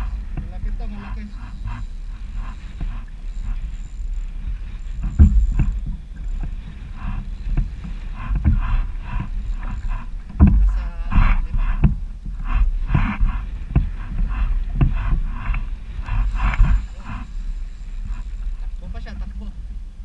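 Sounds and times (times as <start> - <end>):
water splashing against kayak hull: 0.0 - 20.0
knocks against hull: 5.0 - 6.6, 10.3 - 12.1.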